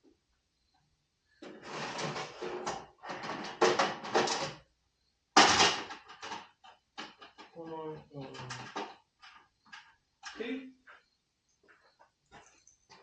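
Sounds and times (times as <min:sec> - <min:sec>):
drawer opening: 0:01.4 - 0:04.5.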